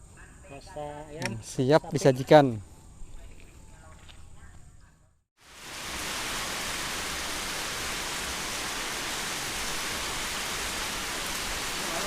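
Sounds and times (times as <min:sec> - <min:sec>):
steady rain falling: 0:05.4 - 0:12.0.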